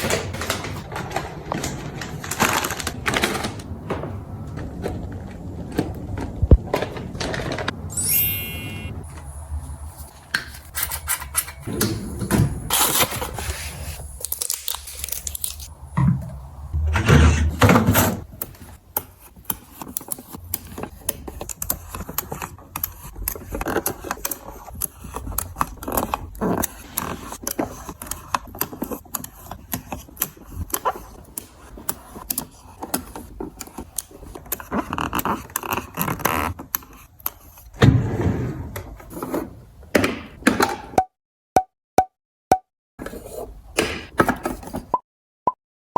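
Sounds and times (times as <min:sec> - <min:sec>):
plastic packaging rustling: 0:00.0 - 0:07.9.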